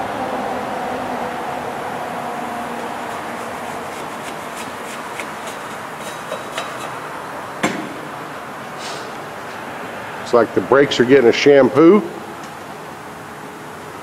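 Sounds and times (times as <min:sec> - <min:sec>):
steady background hiss: 0:00.0 - 0:14.0
sharp knock: 0:07.6 - 0:08.0.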